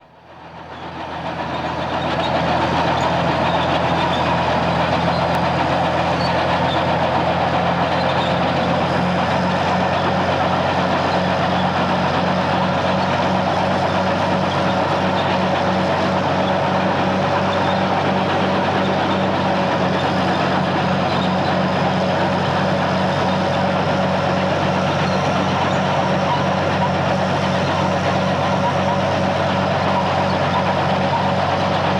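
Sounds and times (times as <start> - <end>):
tank engine droning: 0.0 - 31.9
tank tracks squeaking and clanking: 0.7 - 10.2, 24.4 - 31.9.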